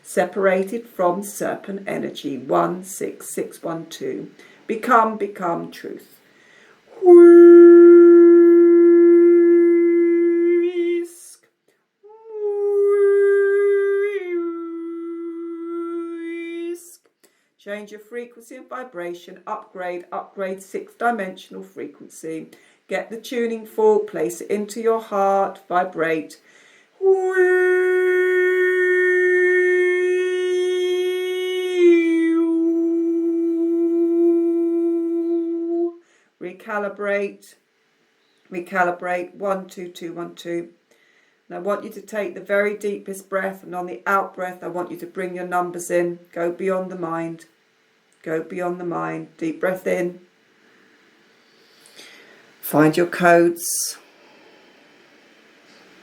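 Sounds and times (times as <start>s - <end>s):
woman humming a long note: 6.9s - 11.0s, 12.0s - 16.7s, 27.0s - 36.0s.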